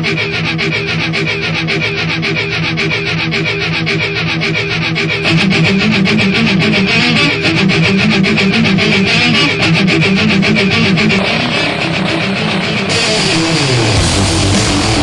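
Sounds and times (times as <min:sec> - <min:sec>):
rock music with electric guitar: 0:00.0 - 0:15.0.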